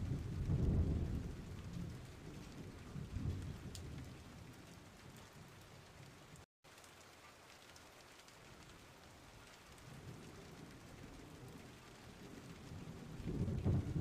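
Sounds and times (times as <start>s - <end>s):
low rumble of thunder: 0.0s - 6.0s, 9.8s - 14.0s
steady rain: 0.0s - 14.0s.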